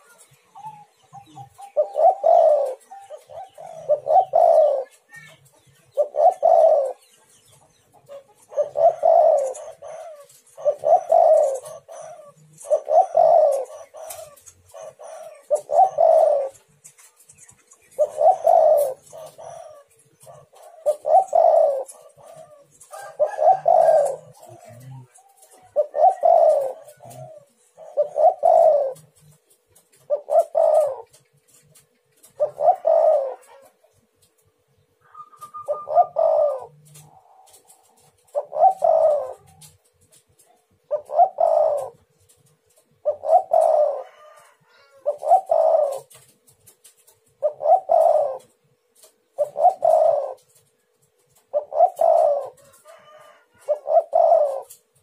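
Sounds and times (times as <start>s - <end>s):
dove cooing: 0.0s - 55.0s.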